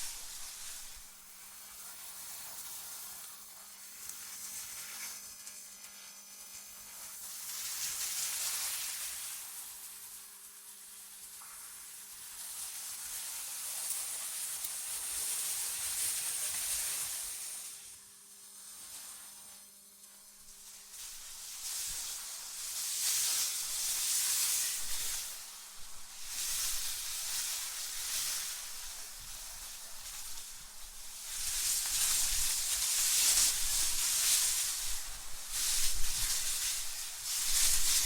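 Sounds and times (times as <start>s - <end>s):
wind gusts hissing: 0.0s - 1.1s.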